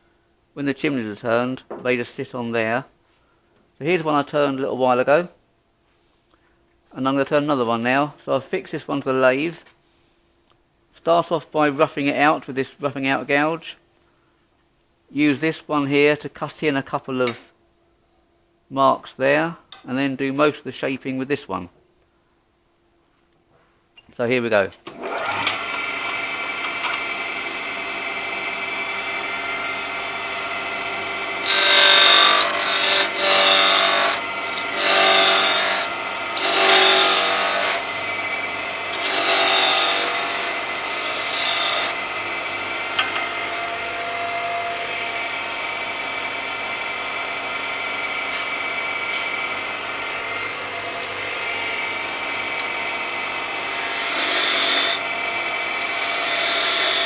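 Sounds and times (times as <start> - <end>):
wood lathe motor hum: 25.0 - 50.4, 51.4 - 57.0
gouge cutting spinning wood: 30.9 - 42.8, 48.3 - 48.5, 53.5 - 55.1, 55.8 - 57.0.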